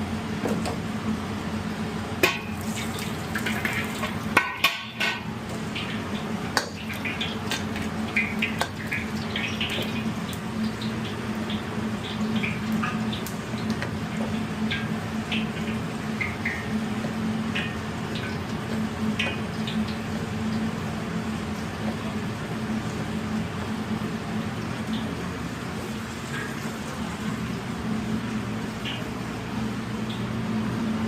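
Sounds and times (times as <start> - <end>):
constant low hum: 0.0 - 31.0
water running into sink: 2.2 - 16.6.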